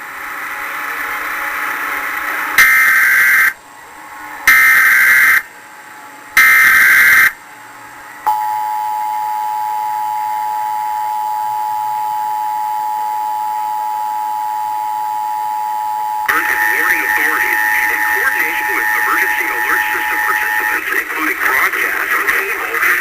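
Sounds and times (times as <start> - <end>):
digital data tone bursts: 6.4 - 7.4, 16.2 - 22.0.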